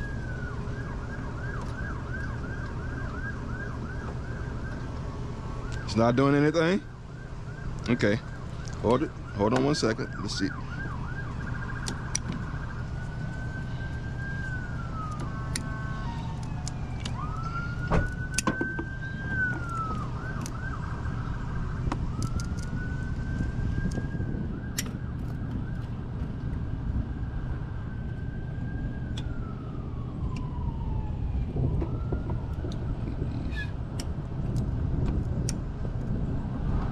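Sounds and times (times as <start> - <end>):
emergency vehicle siren: 0.0 - 36.9
vehicle engine rumble: 0.0 - 36.9.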